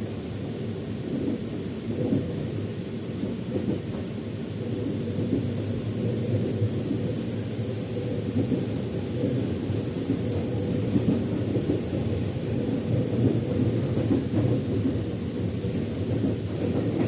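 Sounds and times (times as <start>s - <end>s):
train wheels rumbling on track: 0.0s - 17.0s.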